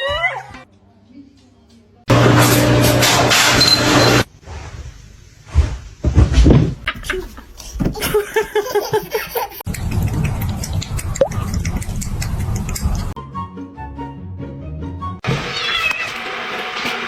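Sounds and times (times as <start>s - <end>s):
person laughing: 6.9s - 13.1s.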